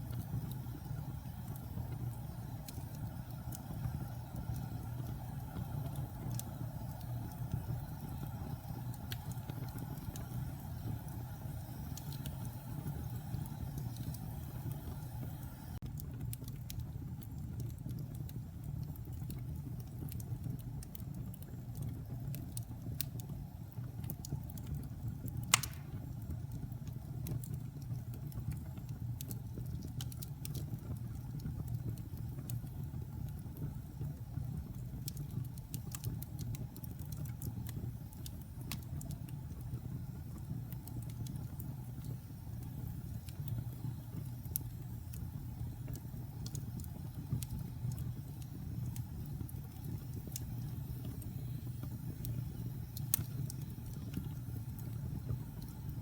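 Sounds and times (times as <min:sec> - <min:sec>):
fire burning in fireplace: 0:00.0 - 0:56.0
wood crackling: 0:25.3 - 0:26.2
loud sharp pop of wood: 0:25.5 - 0:26.0.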